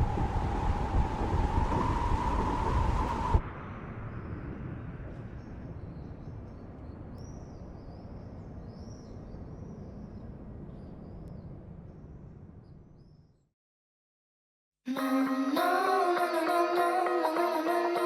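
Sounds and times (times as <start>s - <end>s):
low rumbling drone: 0.0s - 13.1s.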